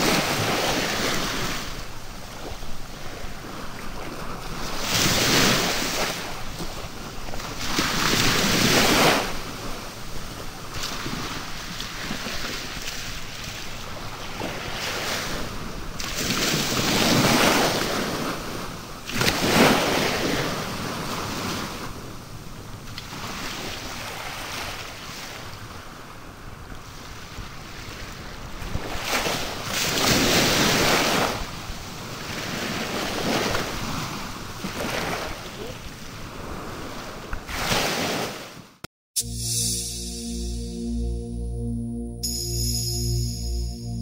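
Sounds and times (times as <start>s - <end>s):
sea waves breaking: 0.0s - 22.0s, 26.8s - 38.8s.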